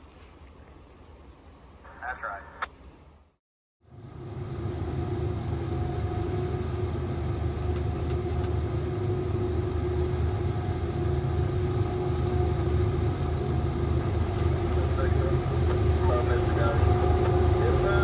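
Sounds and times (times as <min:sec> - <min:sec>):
diesel locomotive rumbling: 0:03.8 - 0:18.0.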